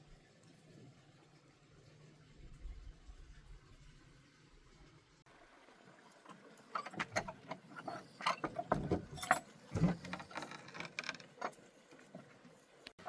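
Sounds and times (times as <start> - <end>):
light clicks and clatters: 6.0 - 13.0.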